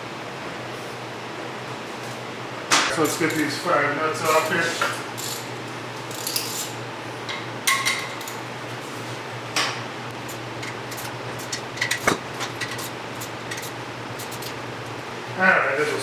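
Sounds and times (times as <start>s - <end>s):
wrench clinking on steel: 10.2s - 15.1s.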